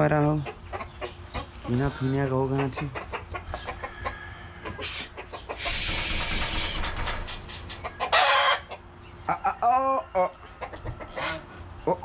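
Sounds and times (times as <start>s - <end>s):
chickens clucking: 0.0s - 12.0s
chicken squawk: 2.6s - 11.5s
pitched chicken calls: 3.1s - 11.6s.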